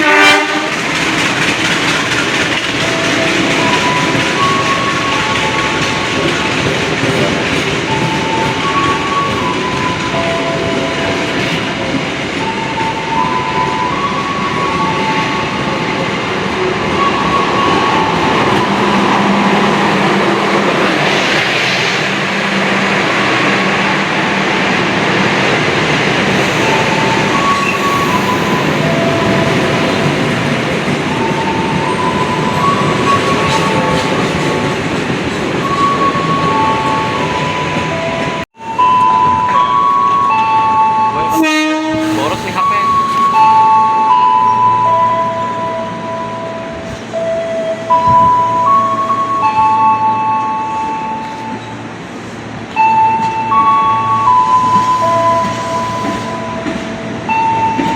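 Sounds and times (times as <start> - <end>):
train rail rumble: 0.0 - 57.9.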